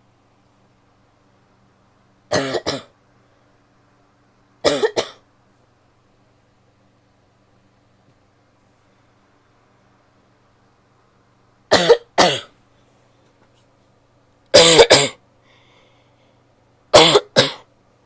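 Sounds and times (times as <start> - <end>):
woman coughing: 2.3 - 2.9, 4.7 - 5.2, 11.7 - 12.5, 14.6 - 15.2, 17.0 - 17.7.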